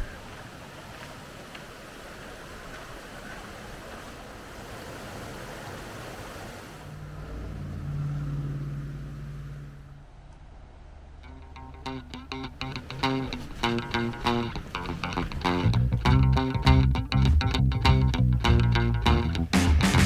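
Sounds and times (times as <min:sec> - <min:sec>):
vehicle passing: 0:06.8 - 0:20.0
guitar music: 0:11.2 - 0:20.0.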